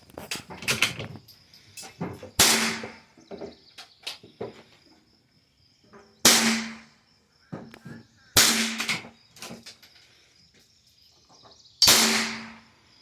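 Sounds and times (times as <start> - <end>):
handling clicks and knocks: 0.0 - 4.8, 8.7 - 10.0
rifle shots with echo: 2.4 - 3.0, 6.3 - 6.8, 8.4 - 9.0, 11.8 - 12.6.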